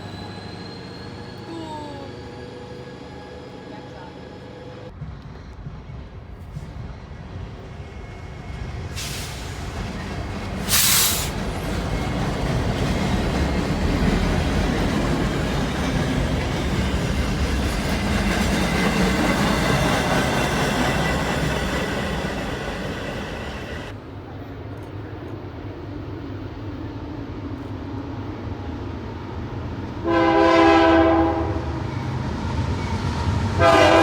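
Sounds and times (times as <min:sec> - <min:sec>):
faint wheel squeal: 0:00.0 - 0:03.8
train wheels rumbling on rails: 0:00.0 - 0:34.0.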